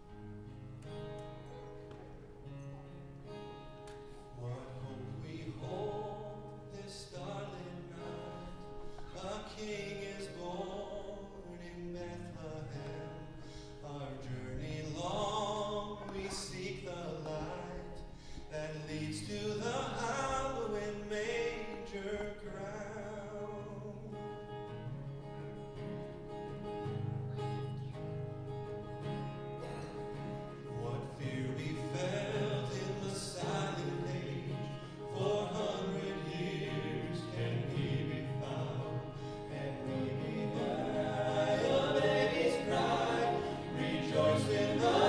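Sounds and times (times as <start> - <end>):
acoustic guitar: 0.0 - 45.0
person singing with vibrato: 30.7 - 45.0.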